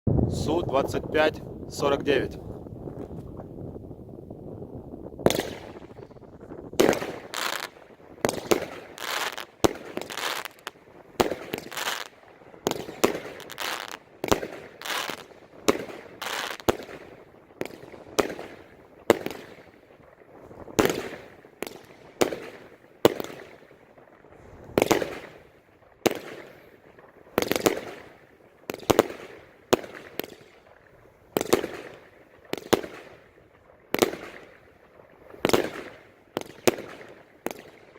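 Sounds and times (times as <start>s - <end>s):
faint firework crack: 2.4s - 37.9s
firework cake bangs: 5.2s - 19.7s, 24.7s - 25.4s.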